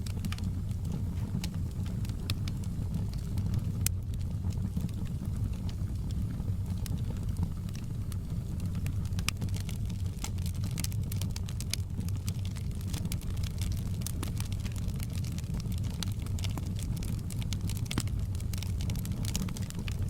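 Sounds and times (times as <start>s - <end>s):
fire rumbling: 0.0s - 20.0s
logs crackling and popping: 0.0s - 20.0s.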